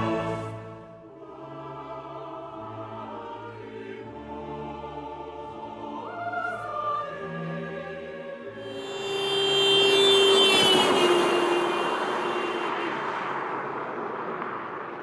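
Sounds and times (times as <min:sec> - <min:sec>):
choir and orchestra music: 0:00.0 - 0:13.7
high voice gliding up: 0:08.6 - 0:13.1.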